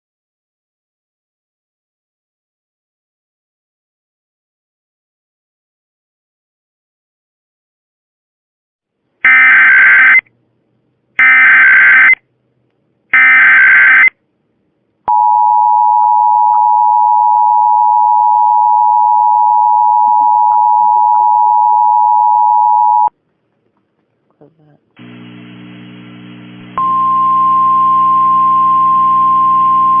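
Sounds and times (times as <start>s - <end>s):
two-tone attention signal: 15.1s - 23.1s.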